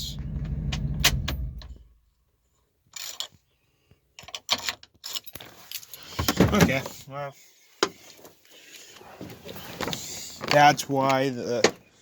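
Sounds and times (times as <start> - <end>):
misfiring truck engine: 0.0 - 1.9.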